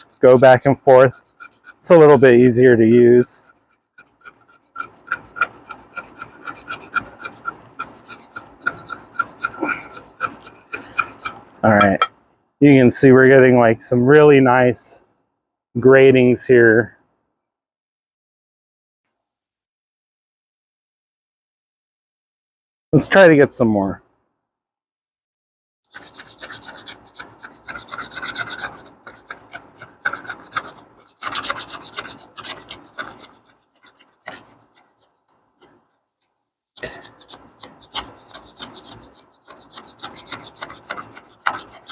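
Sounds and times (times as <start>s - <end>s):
scraper rasping on wood: 0.0s - 12.1s, 25.9s - 36.0s, 36.8s - 41.9s.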